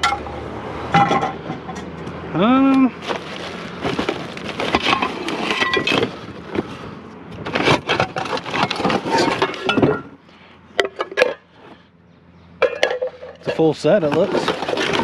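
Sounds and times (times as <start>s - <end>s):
metal pots and pans clattering: 0.9s - 1.9s, 3.9s - 6.2s, 7.5s - 10.2s, 10.8s - 11.5s, 12.6s - 15.0s.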